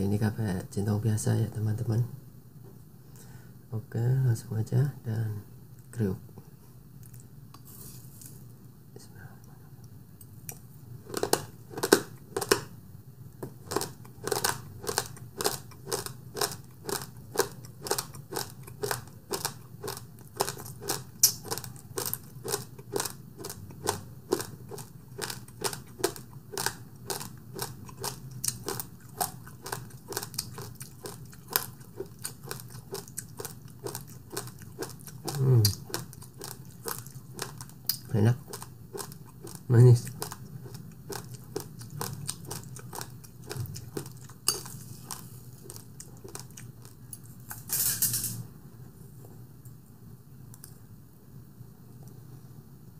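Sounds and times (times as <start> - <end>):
crunchy chewing: 10.4 - 12.7, 13.4 - 47.7.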